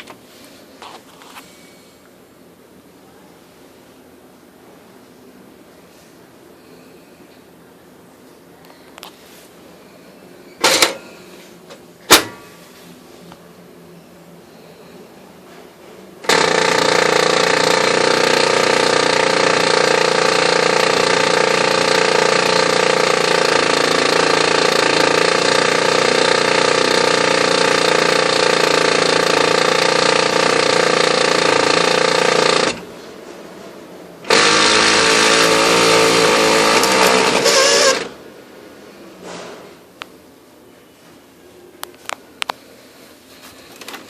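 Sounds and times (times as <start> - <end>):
laser printer grinding loudly: 16.2 - 32.9, 34.3 - 38.2.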